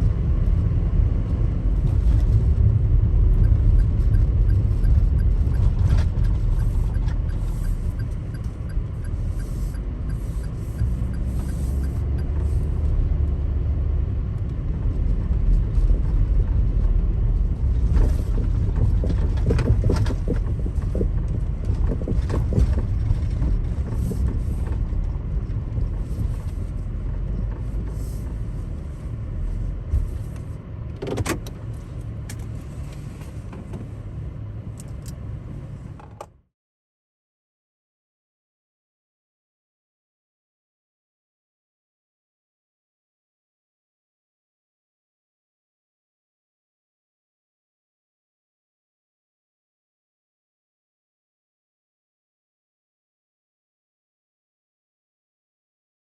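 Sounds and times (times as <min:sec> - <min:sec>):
engine and tyres rumbling: 0:00.0 - 0:36.5.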